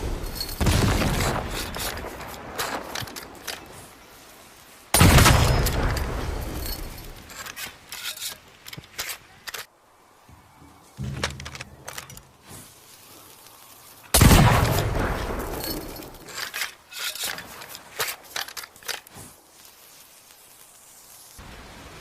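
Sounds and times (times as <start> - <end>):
small metallic clicks and scrapes: 1.2 - 3.9, 5.5 - 9.7, 11.0 - 12.7, 15.1 - 20.8.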